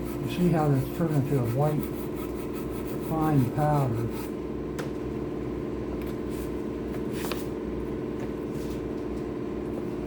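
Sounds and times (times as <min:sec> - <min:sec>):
sanding strokes: 0:00.0 - 0:04.3
steady hum: 0:00.0 - 0:10.0.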